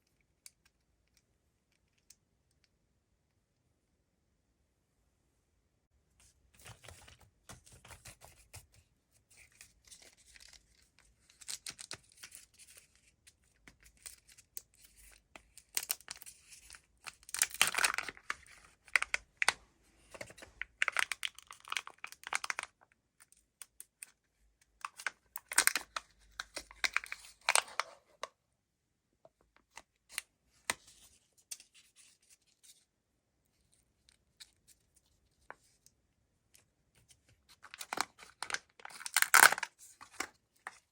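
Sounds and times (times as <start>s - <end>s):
wrapper tearing and crinkling: 17.2s - 19.1s, 20.8s - 22.7s, 37.7s - 39.7s.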